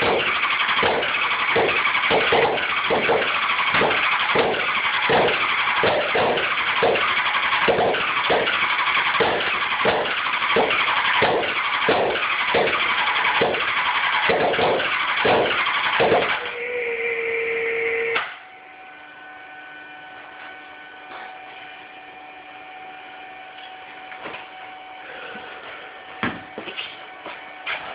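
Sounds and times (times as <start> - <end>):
motorcycle engine cranking: 0.0 - 16.4.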